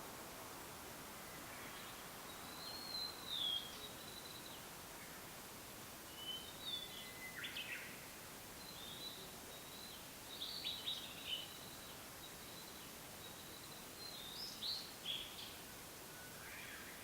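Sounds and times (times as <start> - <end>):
background hiss: 0.0 - 17.0
bird singing whistled notes: 1.7 - 4.6, 6.1 - 8.0, 8.6 - 15.6.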